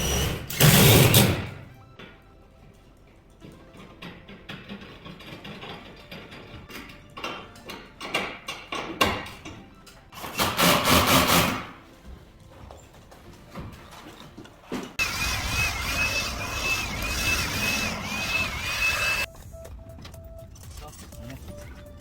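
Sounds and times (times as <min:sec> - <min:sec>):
knocks and clatter: 0:03.4 - 0:09.6.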